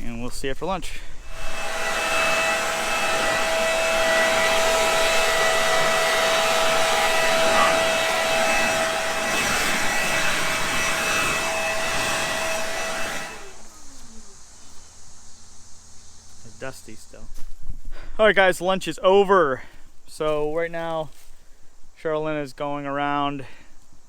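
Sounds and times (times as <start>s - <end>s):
stump grinder whining and hissing: 0.9s - 16.9s.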